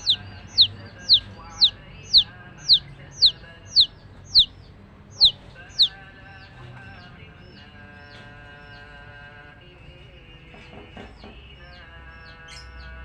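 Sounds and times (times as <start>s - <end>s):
chick peeping: 0.0s - 9.2s.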